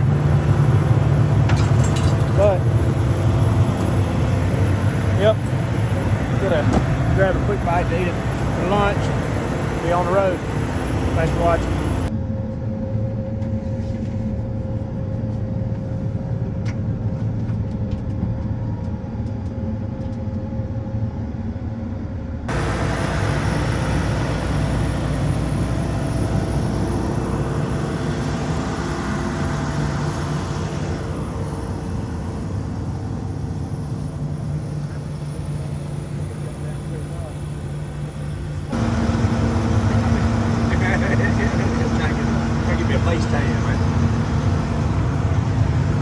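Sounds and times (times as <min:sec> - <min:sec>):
road noise: 0:00.0 - 0:12.2, 0:22.5 - 0:46.0
vehicle engine humming: 0:00.0 - 0:46.0.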